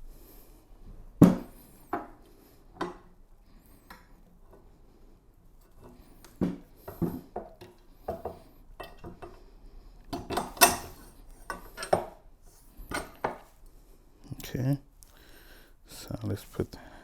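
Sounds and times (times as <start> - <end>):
metal cart parts knocking and clinking: 10.3 - 12.1.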